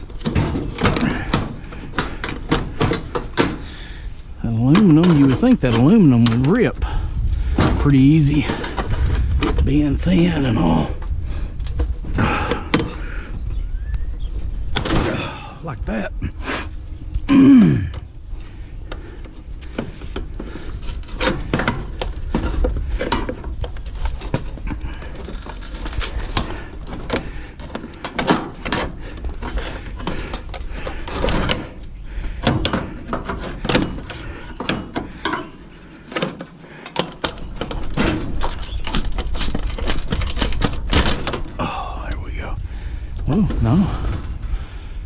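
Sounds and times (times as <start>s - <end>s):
sheet metal clanking and scraping: 0.0s - 3.9s, 19.7s - 41.6s.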